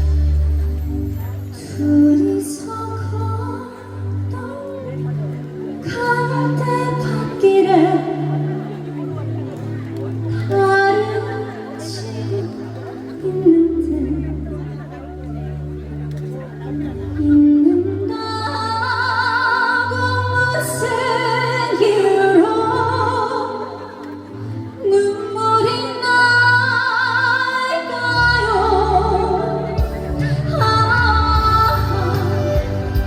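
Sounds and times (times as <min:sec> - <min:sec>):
backing music with bass line: 0:00.0 - 0:03.4, 0:28.1 - 0:33.0
woman singing a slow ballad: 0:01.5 - 0:08.7, 0:10.3 - 0:14.5, 0:17.2 - 0:23.8, 0:24.8 - 0:33.0.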